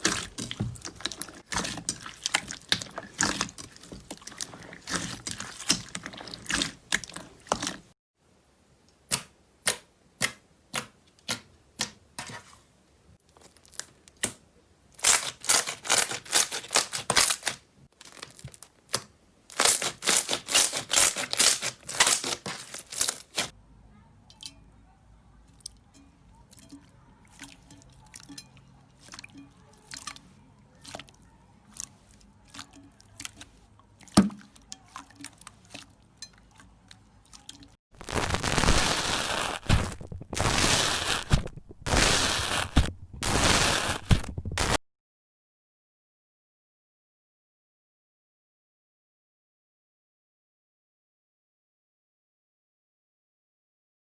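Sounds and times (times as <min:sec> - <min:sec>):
slime crackling and popping: 0:00.0 - 0:07.9, 0:15.0 - 0:23.5, 0:38.0 - 0:44.8.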